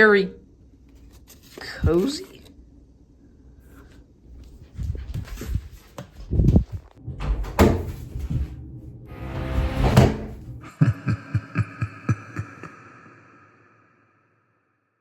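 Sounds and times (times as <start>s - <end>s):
horror music: 8.6s - 14.2s.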